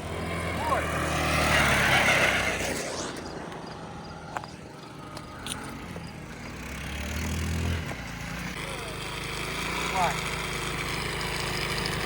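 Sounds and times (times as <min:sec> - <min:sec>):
scooter engine running: 0:04.2 - 0:12.0.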